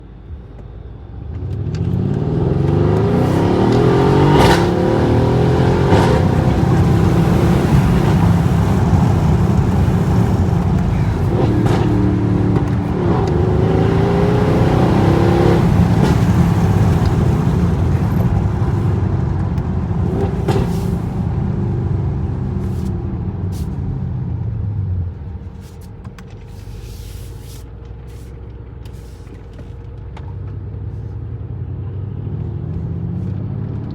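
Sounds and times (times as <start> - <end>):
exhaust pops: 1.3 - 21.7
car engine revving: 1.3 - 28.3.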